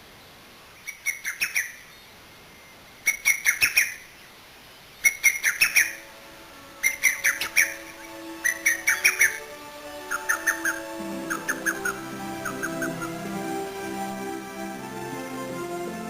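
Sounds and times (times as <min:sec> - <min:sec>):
bird chirping: 0:00.8 - 0:14.2
soft music with held notes: 0:05.5 - 0:16.0.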